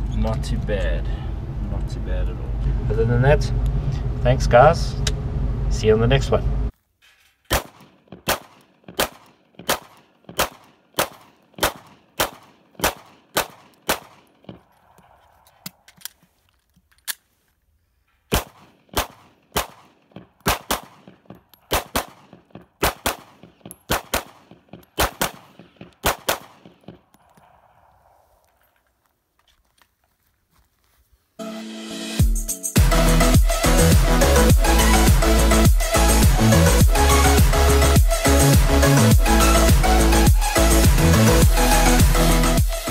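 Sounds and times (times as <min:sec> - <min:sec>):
pistol shots: 0:07.5 - 0:15.8, 0:18.3 - 0:27.9.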